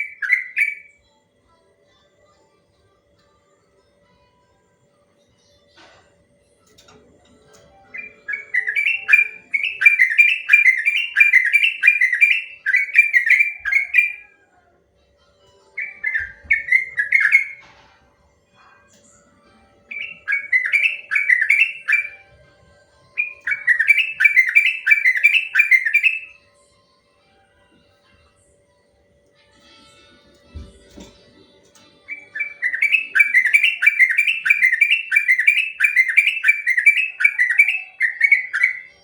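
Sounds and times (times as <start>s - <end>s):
bulbul singing rolling trill: 0.0s - 1.1s, 6.8s - 14.5s, 15.5s - 17.6s, 18.6s - 27.0s, 29.4s - 39.0s
faint steady hum: 0.0s - 39.0s.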